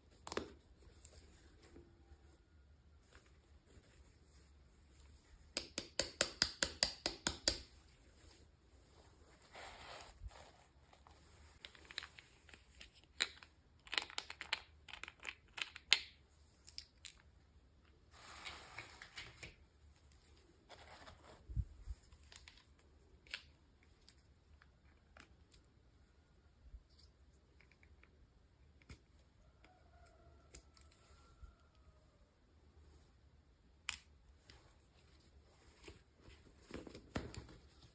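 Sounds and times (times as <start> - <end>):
sharp clicks and taps: 5.5 - 7.7.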